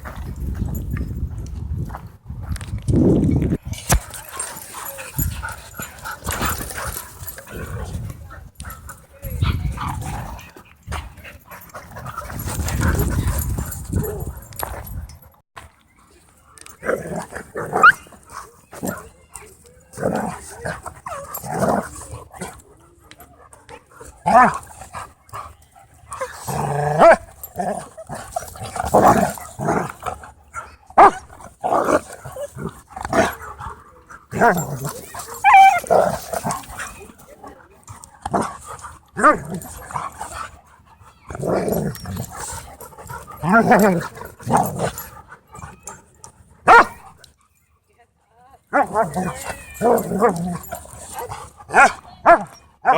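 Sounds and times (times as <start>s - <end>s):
dogs barking and yipping: 3.8s - 15.0s, 16.6s - 19.5s, 24.0s - 47.4s, 48.7s - 52.9s
dogs growling: 4.0s - 14.8s, 16.7s - 19.1s, 19.9s - 22.7s, 23.5s - 46.6s, 48.7s - 52.9s
dog whining: 35.3s - 36.0s.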